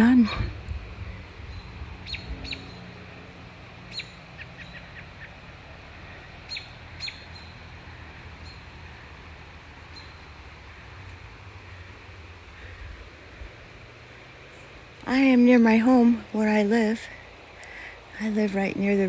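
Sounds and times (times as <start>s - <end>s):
low background rumble: 0.0s - 19.0s
songbirds chirping: 0.0s - 19.0s.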